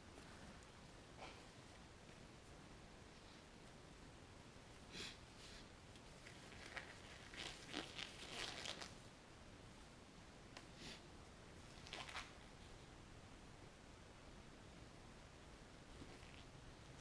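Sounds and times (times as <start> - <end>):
small objects scraping and rustling: 6.2 - 9.0.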